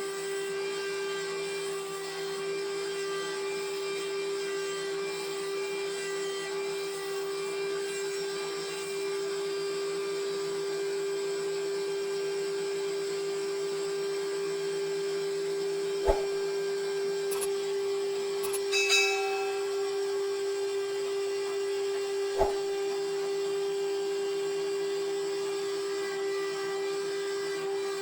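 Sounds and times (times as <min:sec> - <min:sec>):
sharp knock: 0:16.1 - 0:16.4, 0:22.4 - 0:22.7.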